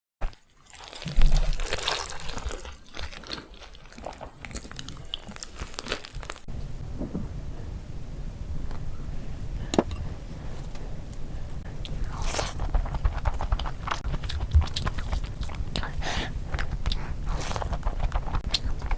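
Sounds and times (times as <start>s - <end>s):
crunchy bites and chewing: 0.2s - 6.5s, 11.8s - 18.9s.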